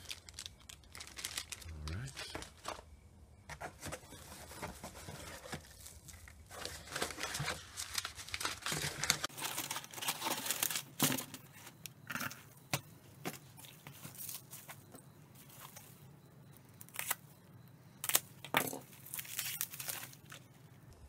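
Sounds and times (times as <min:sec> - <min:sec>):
packaging crinkling and tearing: 0:00.0 - 0:02.8, 0:04.2 - 0:11.6, 0:18.0 - 0:20.5.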